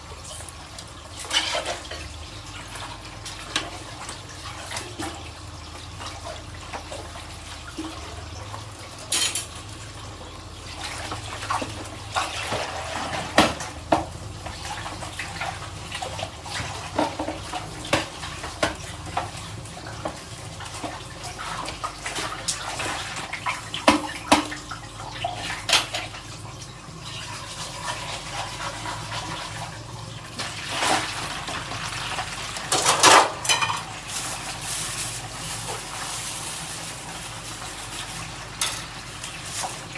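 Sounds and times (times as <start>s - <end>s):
running tap water: 0.0s - 39.9s
dishes clinking: 32.7s - 33.9s.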